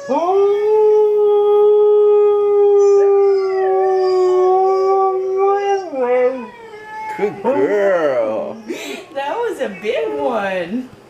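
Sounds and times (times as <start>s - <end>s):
dog howling: 0.0s - 8.8s.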